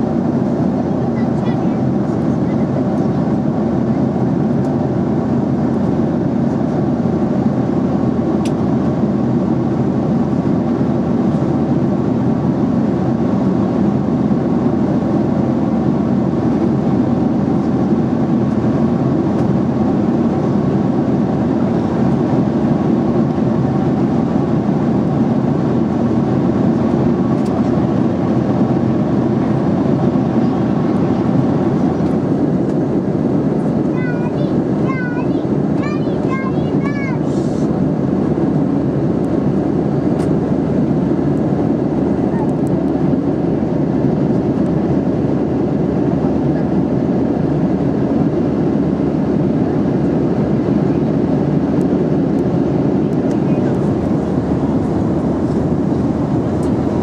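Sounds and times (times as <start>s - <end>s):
airplane cabin drone: 0.0s - 57.0s.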